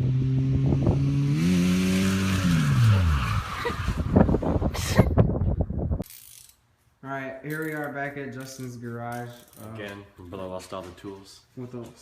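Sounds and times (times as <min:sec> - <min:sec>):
car engine at high revs: 0:00.0 - 0:04.6
tyres skidding: 0:01.3 - 0:05.0.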